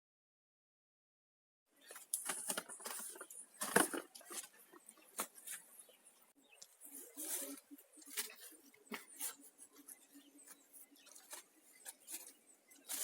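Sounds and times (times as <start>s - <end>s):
footsteps through dry vegetation: 6.7s - 13.0s.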